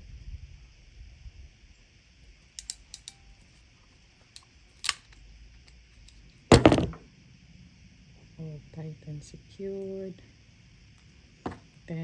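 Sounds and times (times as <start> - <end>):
hard plastic clicking: 2.6 - 3.2.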